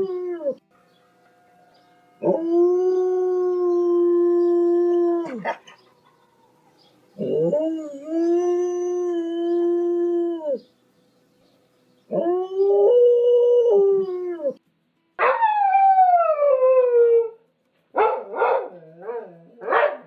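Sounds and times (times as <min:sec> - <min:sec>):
dog howling: 0:01.6 - 0:06.5, 0:07.2 - 0:10.6.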